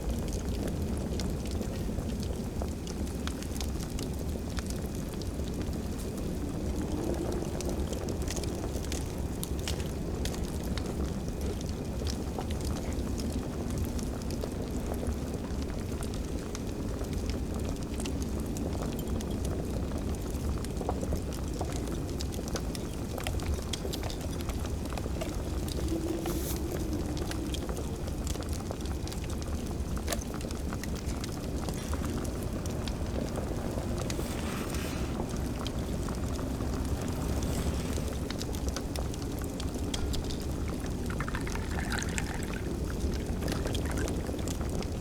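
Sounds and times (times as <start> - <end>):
fire crackling and popping: 0.0 - 45.0
steady low rumble: 21.6 - 41.2
indistinct kitchen sounds: 21.6 - 44.8.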